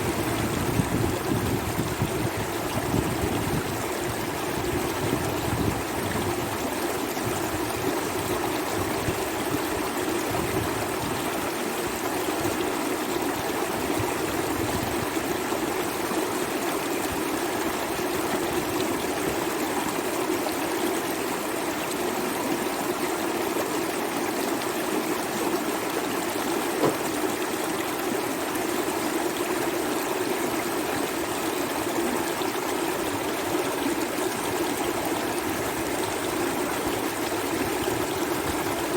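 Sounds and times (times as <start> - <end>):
river water rushing: 0.0 - 38.9
brief knock: 26.8 - 27.1.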